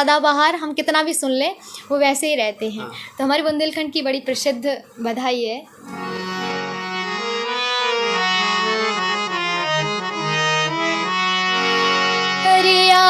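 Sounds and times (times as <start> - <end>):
harmonium melody over low drone: 5.7 - 13.0.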